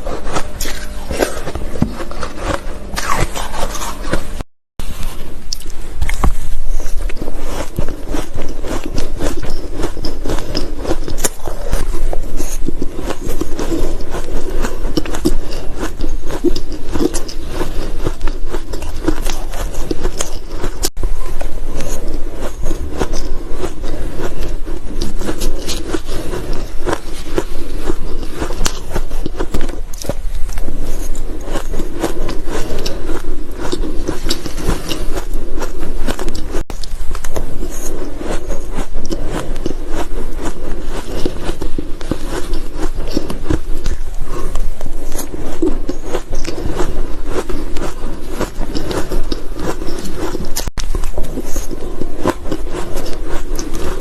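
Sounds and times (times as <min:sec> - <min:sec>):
ice being chewed: 0:00.0 - 0:54.0.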